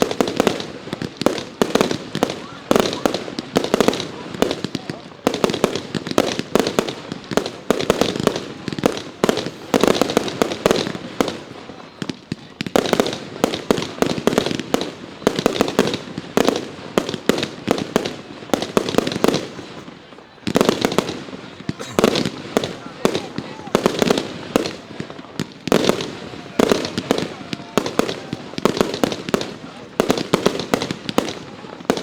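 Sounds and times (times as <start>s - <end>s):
fireworks bangs and crackles: 0.0s - 32.0s.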